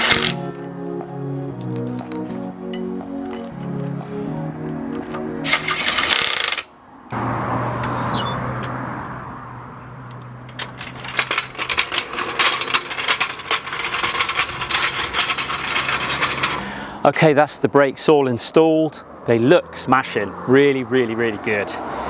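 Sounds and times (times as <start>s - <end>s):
metal parts clinking: 0.0s - 0.4s, 1.6s - 3.9s, 5.0s - 6.6s, 10.4s - 16.7s.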